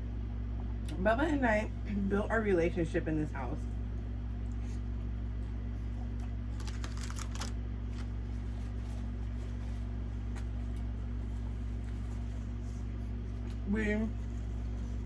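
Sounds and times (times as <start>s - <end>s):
crackling of fried food chewed: 6.2s - 8.1s.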